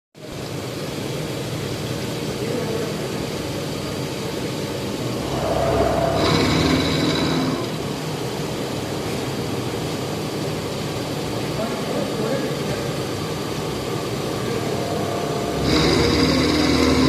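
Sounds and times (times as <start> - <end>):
machine whining: 4.8 - 8.4, 13.4 - 17.0
milling machine running: 13.5 - 17.0.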